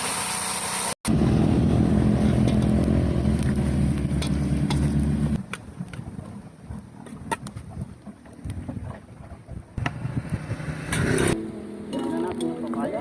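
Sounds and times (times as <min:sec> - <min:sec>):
engine humming: 0:01.0 - 0:06.7, 0:09.8 - 0:13.0.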